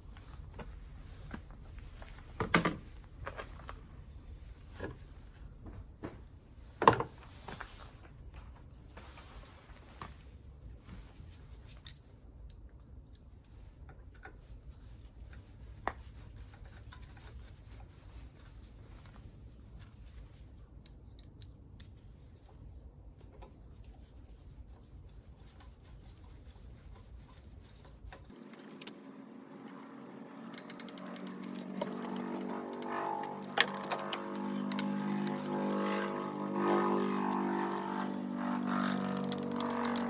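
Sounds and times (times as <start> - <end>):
low steady hum: 14.5 - 40.0
hand tools clicking on engine parts: 30.4 - 40.0.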